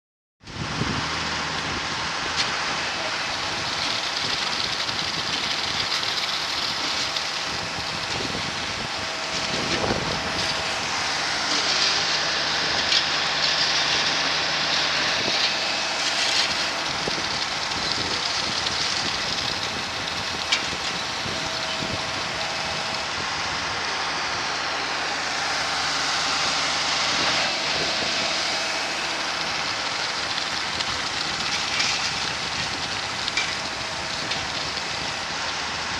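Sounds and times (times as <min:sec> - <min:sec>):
concrete pump engine hum: 0:00.4 - 0:35.9.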